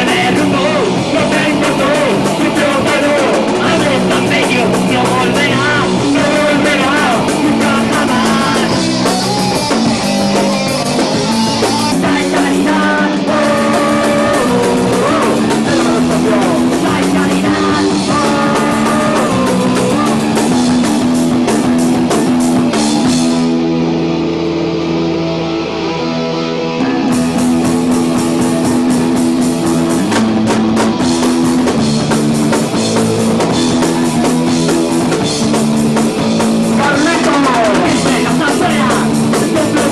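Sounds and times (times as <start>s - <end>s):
person singing: 0.0s - 21.0s, 36.7s - 39.9s
drum kit: 0.0s - 39.9s
rock band playing: 0.0s - 39.9s.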